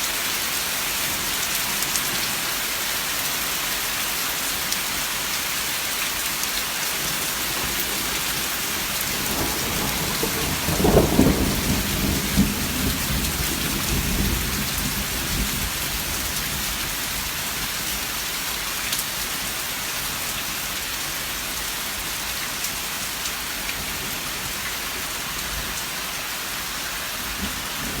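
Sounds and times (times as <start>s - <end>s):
heavy rain hissing: 0.0s - 28.0s
low thunder rumble: 7.5s - 17.4s.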